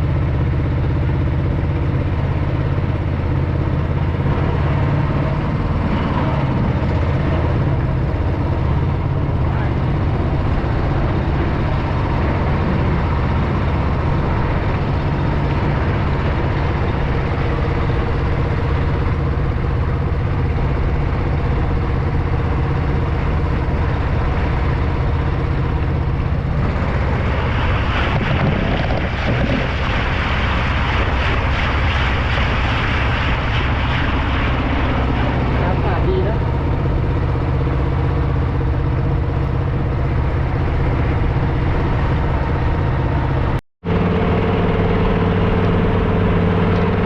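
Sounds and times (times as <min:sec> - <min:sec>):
boat engine droning: 0:00.0 - 0:47.0
hissing rush: 0:26.4 - 0:36.6.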